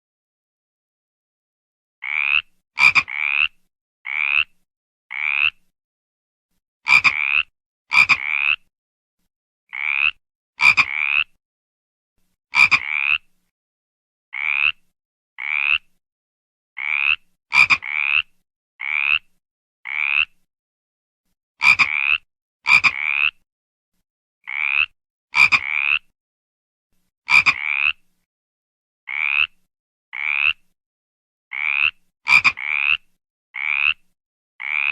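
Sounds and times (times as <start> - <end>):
frog croaking: 2.0 - 5.6, 6.9 - 8.7, 9.7 - 11.4, 12.6 - 13.3, 14.3 - 14.8, 15.4 - 15.9, 16.8 - 19.3, 19.9 - 20.4, 21.6 - 23.4, 24.4 - 26.1, 27.3 - 28.0, 29.1 - 29.6, 30.2 - 30.6, 31.5 - 34.0, 34.6 - 34.9.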